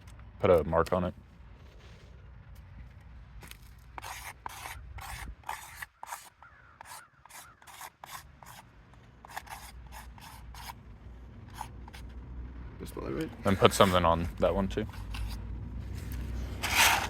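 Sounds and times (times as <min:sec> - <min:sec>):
chalk scraping on shingle: 0:03.4 - 0:10.8, 0:11.4 - 0:12.2, 0:13.4 - 0:17.0.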